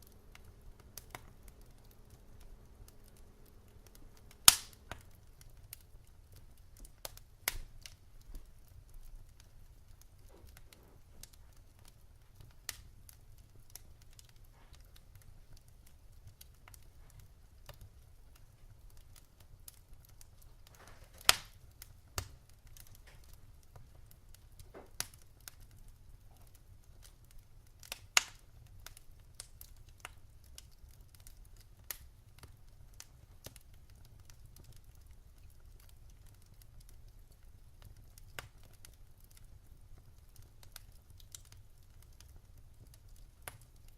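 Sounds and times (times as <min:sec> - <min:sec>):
faint low rumble: 0:00.0 - 0:19.7
wood fire crackling: 0:00.0 - 0:43.9.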